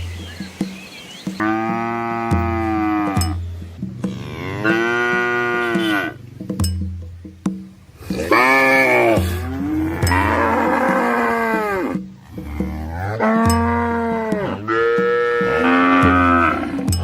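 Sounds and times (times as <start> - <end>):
cattle mooing: 1.4 - 3.4, 4.0 - 6.5, 8.0 - 17.0.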